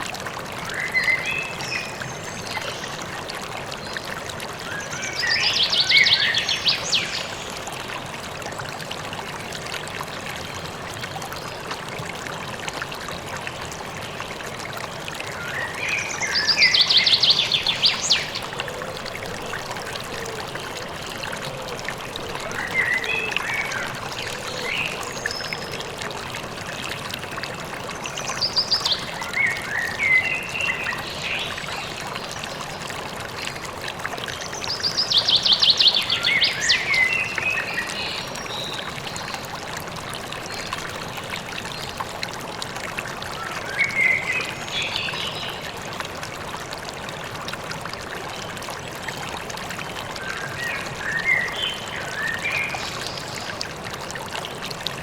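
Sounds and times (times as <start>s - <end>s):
stream running: 0.0s - 55.0s
songbirds singing: 4.7s - 7.6s, 15.3s - 21.0s, 34.3s - 39.5s.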